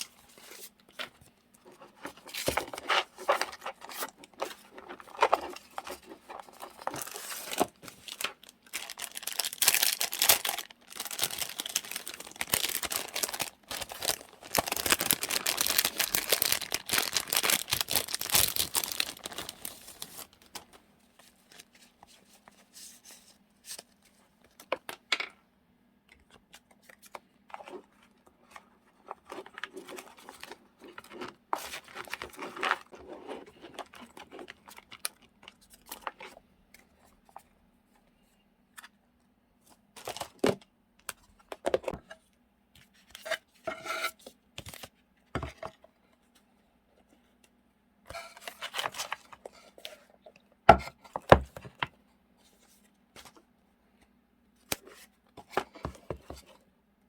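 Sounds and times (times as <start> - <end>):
paper and plastic crinkling: 0.0 - 24.8, 26.6 - 36.4, 40.0 - 40.6, 48.1 - 50.0.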